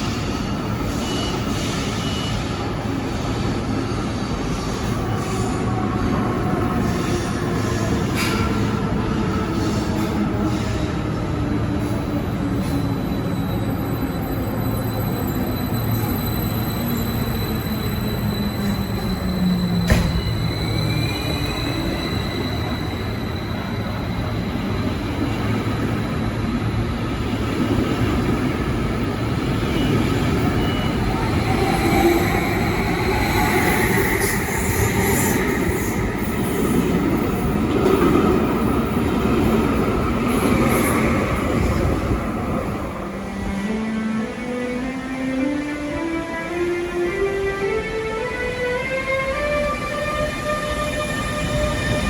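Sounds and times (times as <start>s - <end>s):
train rumbling on tracks: 0.0s - 52.0s
faint wheel squeal: 12.6s - 24.8s.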